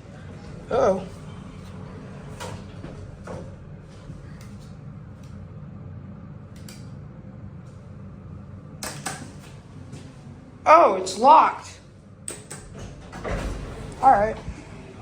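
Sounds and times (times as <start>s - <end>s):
elevator hum: 0.0s - 15.0s.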